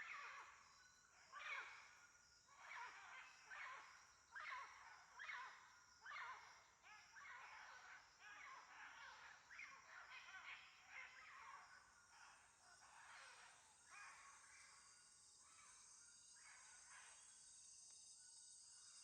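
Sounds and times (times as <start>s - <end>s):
high insect hiss: 13.3s - 19.0s.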